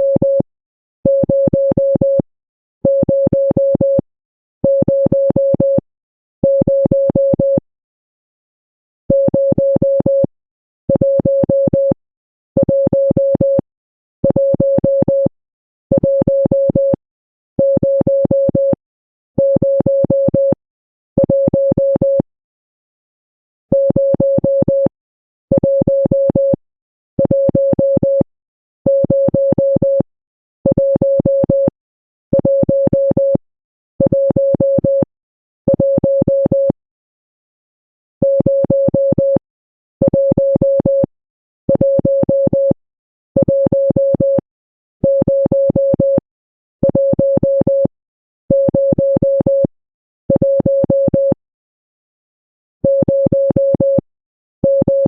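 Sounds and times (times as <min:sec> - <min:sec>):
morse code beeps: 0:34.0 - 0:35.1, 0:35.7 - 0:36.8, 0:41.7 - 0:42.8, 0:43.4 - 0:44.4, 0:45.0 - 0:46.2, 0:48.5 - 0:49.7, 0:54.6 - 0:55.0.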